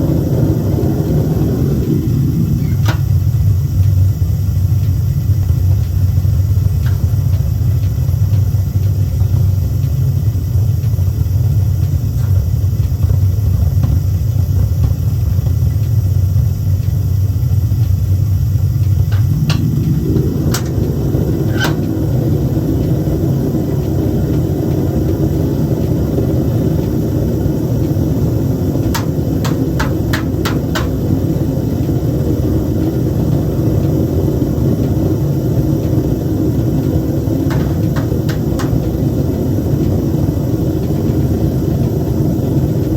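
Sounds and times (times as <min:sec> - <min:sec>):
furnace rumbling: 0:00.0 - 0:42.9
sharp metallic clicks: 0:18.8 - 0:23.0, 0:27.8 - 0:31.5, 0:36.7 - 0:39.2.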